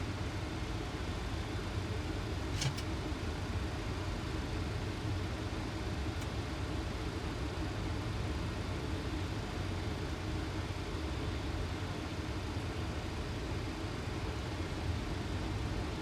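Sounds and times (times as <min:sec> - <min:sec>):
aircraft cockpit engine rumble: 0:00.0 - 0:16.0
brief click: 0:02.6 - 0:02.9.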